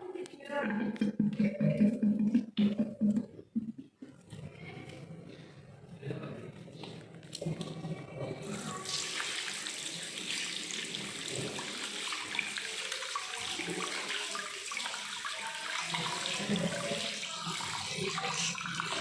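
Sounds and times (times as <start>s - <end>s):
tap water running into sink: 0.7s - 3.8s, 8.5s - 19.0s.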